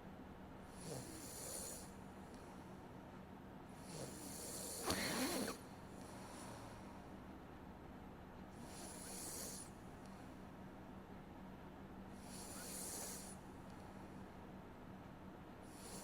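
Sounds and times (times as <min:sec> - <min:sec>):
person snoring softly: 0:00.7 - 0:02.0, 0:03.8 - 0:05.6, 0:08.6 - 0:09.8, 0:12.2 - 0:13.4, 0:15.6 - 0:16.0.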